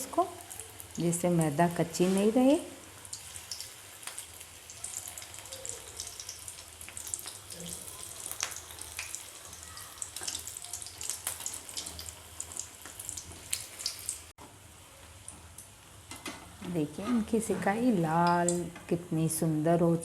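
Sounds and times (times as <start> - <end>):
food deep-frying in oil: 0.0 - 20.0.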